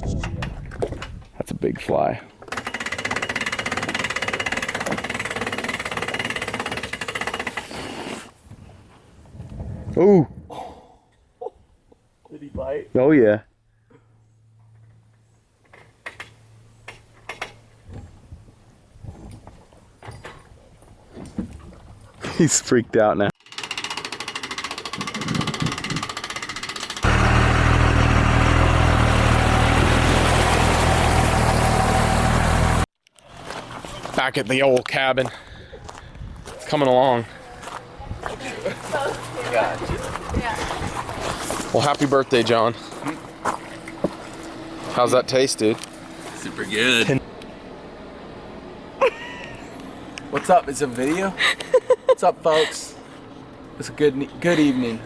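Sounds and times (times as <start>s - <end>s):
small boat motor running: 24.9s - 32.8s.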